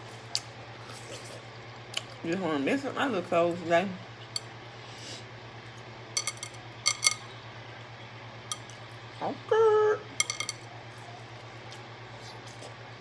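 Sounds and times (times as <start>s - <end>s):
small hard objects clinking: 6.2s - 7.2s.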